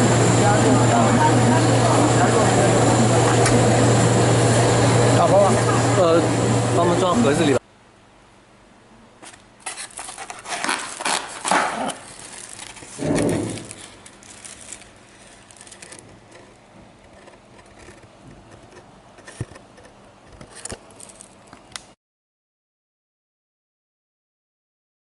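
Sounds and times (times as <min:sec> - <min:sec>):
food packed into takeaway box: 0:09.6 - 0:16.1.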